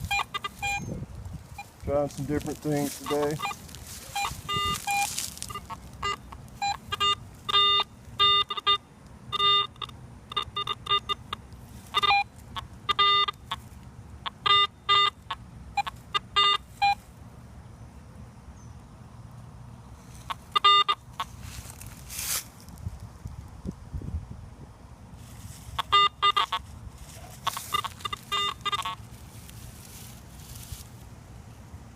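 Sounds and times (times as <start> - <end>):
metal detector beeping: 0.0 - 17.0, 20.2 - 21.4, 25.7 - 26.7, 27.4 - 29.8.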